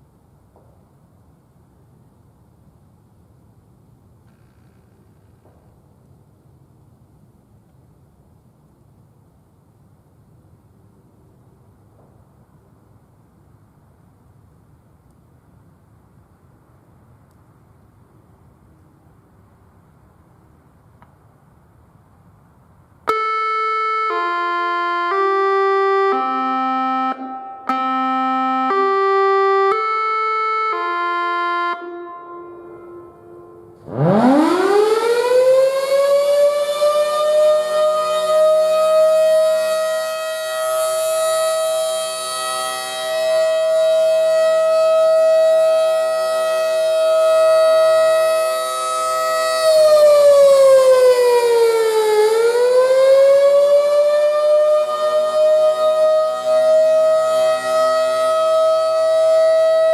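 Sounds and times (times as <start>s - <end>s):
mechanical warning siren: 23.0s - 59.9s.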